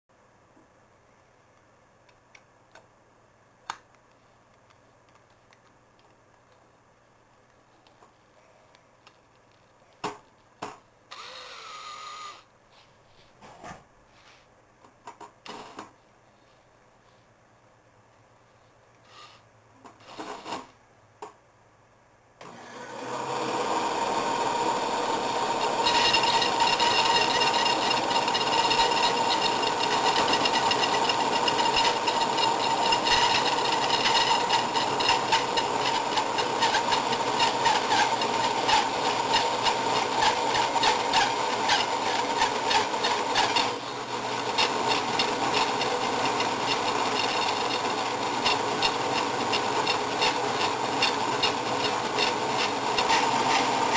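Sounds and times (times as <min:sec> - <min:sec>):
band saw humming: 0:23.2 - 0:53.9
saw blade rasping through wood: 0:25.8 - 0:43.8, 0:48.4 - 0:53.9.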